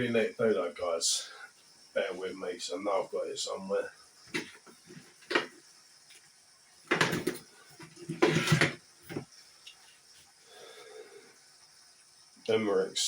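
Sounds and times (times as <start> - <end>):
objects scraping and rattling: 6.9 - 9.3.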